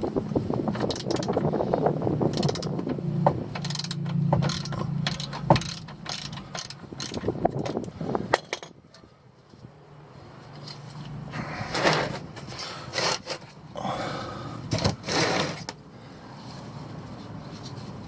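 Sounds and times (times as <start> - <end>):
ratchet wrench clicking: 0.8 - 1.5, 2.3 - 2.8, 3.5 - 8.7.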